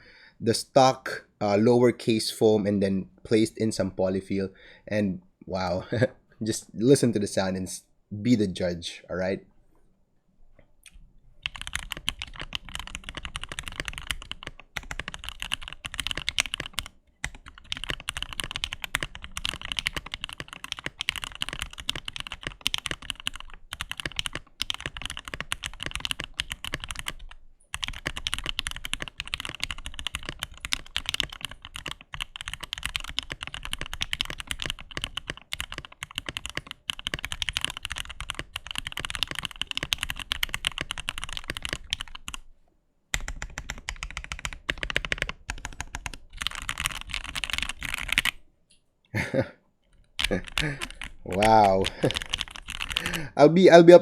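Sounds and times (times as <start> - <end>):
typing on mechanical keyboard: 11.4 - 42.4, 43.2 - 48.4, 50.0 - 53.3.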